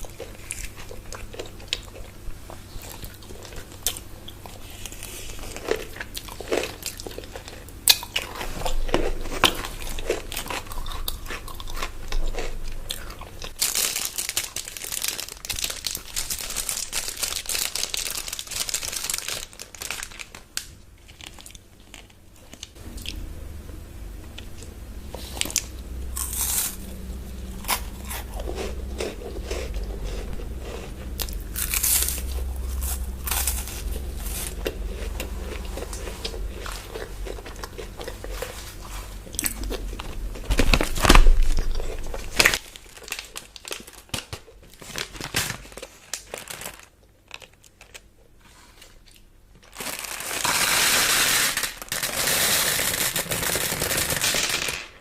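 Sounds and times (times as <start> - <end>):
crunching and chewing chocolate: 0.0 - 23.2, 24.3 - 50.9
wrapper crinkling: 13.4 - 22.7, 31.0 - 48.1, 49.6 - 55.0.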